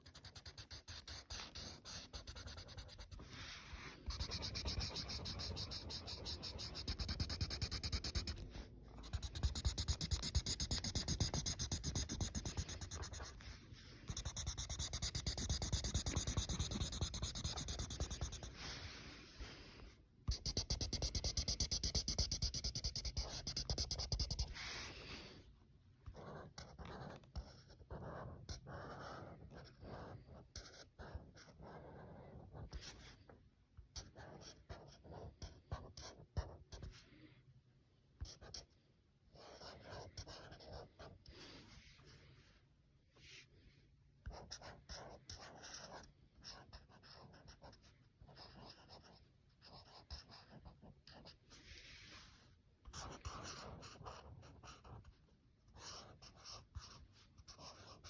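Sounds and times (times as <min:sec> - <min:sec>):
colouring tool scratching paper: 0:00.0 - 0:08.4, 0:09.0 - 0:13.5, 0:14.1 - 0:18.8.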